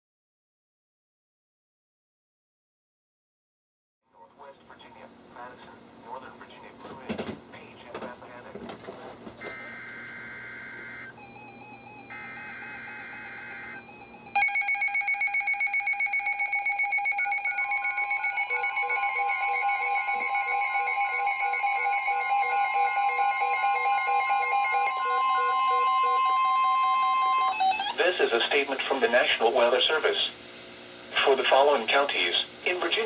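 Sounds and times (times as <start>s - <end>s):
pulsing electronic alarm beeps: 9.4s - 28.0s
steady warning tone: 9.4s - 28.2s
digital data tones: 9.5s - 14.8s, 16.3s - 28.0s.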